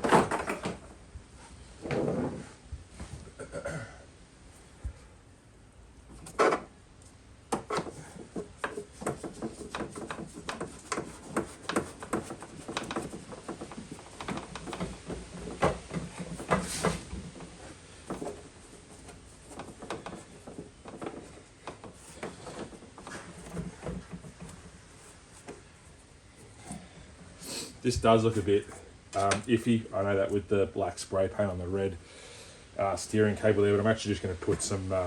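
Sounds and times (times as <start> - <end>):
clicks and knocks of hand work: 7.5 - 25.7.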